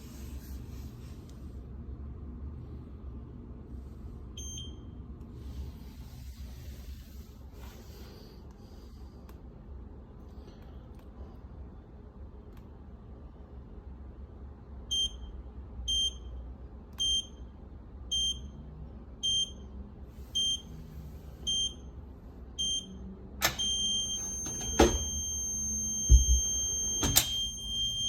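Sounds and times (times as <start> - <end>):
long steady beep: 4.4 - 5.0, 18.1 - 18.6, 19.2 - 19.7, 20.4 - 20.7, 21.5 - 22.0, 22.6 - 28.0
keypad beeps: 22.6 - 28.0.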